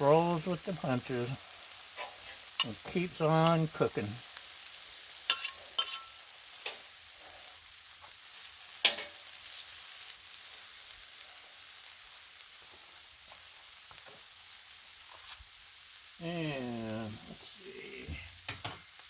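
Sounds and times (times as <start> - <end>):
chicken sizzling on a griddle: 0.0 - 19.0
utensil clicking on steel griddle: 5.3 - 6.8, 8.8 - 9.2.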